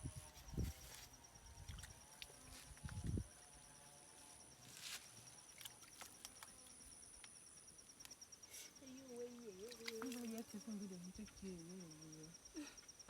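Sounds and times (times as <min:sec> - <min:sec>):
insect thin continuous high tone: 0:00.0 - 0:13.0
insect fast high pulsing trill: 0:05.4 - 0:13.0.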